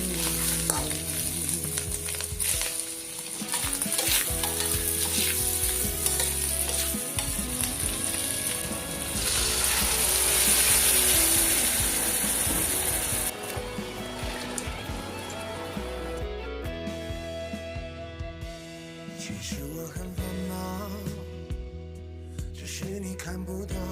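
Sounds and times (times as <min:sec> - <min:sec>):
food sizzling in a pan: 0:00.0 - 0:16.2
spatula scraping a pan: 0:03.4 - 0:07.4.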